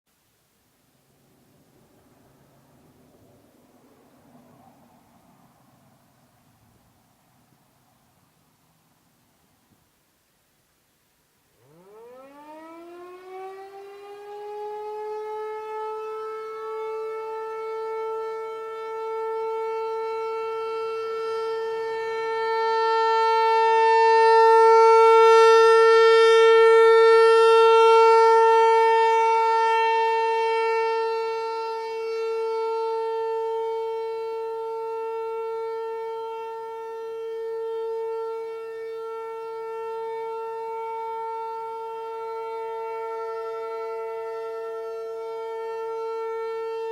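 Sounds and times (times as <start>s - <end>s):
two-tone warning siren wail: 11.6s - 46.9s.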